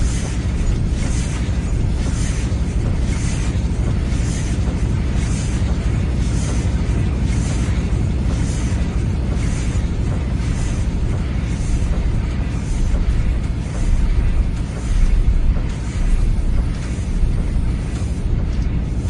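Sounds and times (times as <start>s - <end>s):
machinery low rumble: 0.0s - 19.0s.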